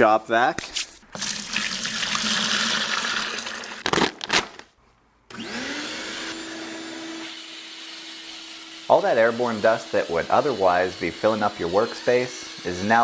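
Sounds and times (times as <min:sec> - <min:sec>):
shop vac motor rushing air: 0:05.3 - 0:13.0.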